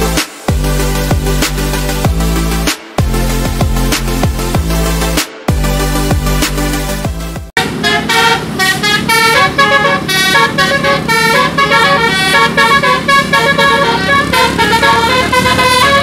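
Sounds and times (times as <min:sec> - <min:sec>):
musical air horn playing tune: 0:07.6 - 0:16.0.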